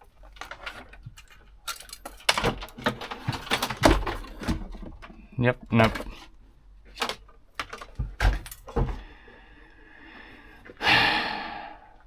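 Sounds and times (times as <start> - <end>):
handling knocks and clicks: 0.0 - 9.0.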